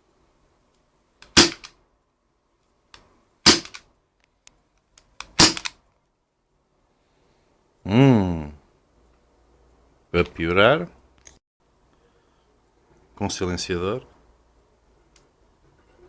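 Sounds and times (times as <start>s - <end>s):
airsoft pistol shots: 1.2s - 1.7s, 3.5s - 3.8s, 5.2s - 5.8s.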